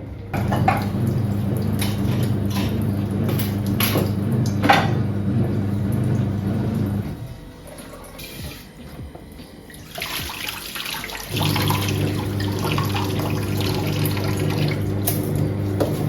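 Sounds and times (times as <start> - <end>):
low hum: 0.0 - 9.9
water running from tap: 0.0 - 16.0.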